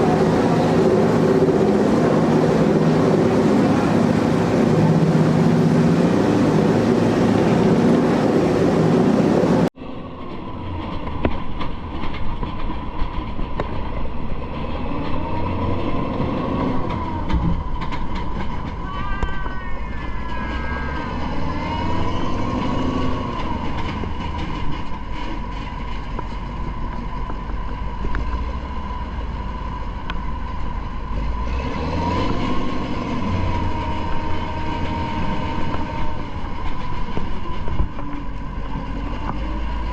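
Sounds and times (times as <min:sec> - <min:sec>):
steady high whine: 0:00.0 - 0:14.5
diesel engine drone: 0:00.0 - 0:39.9.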